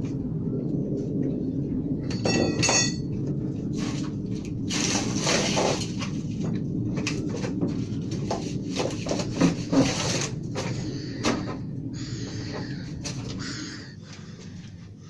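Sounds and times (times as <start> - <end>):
steady low rumble: 0.0 - 15.0
ringing metallic clinks: 2.1 - 3.1
scraping and handling knocks: 4.7 - 11.7.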